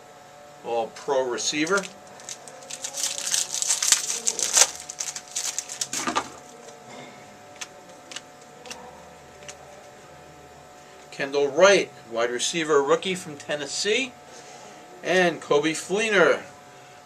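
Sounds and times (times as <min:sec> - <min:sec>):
foil wrapper crinkling: 0:01.4 - 0:06.8
cards clicking and tapping: 0:09.4 - 0:09.6.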